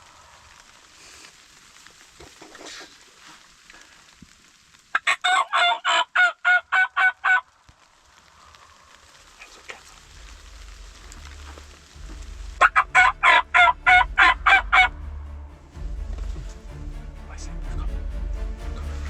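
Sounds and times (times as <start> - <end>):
wild turkey yelping: 5.0 - 7.5.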